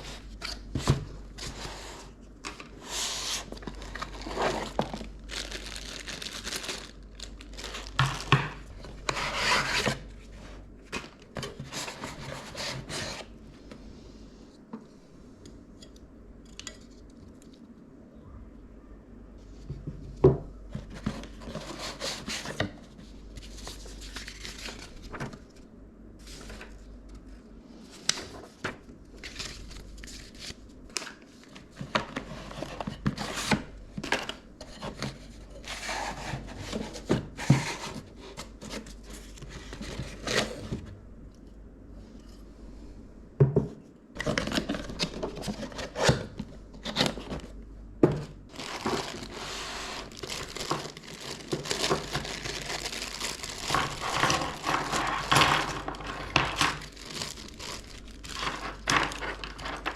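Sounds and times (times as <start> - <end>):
packaging crinkling and tearing: 3.4 - 10.1, 48.5 - 59.9.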